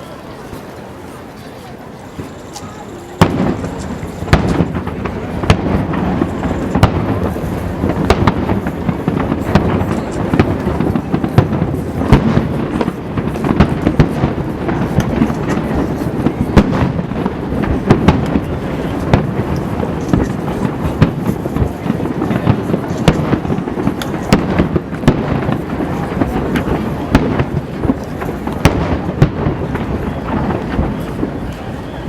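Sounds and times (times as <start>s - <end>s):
fireworks shells bursting: 2.0s - 17.0s
rumble of booms and echoes: 3.2s - 32.0s.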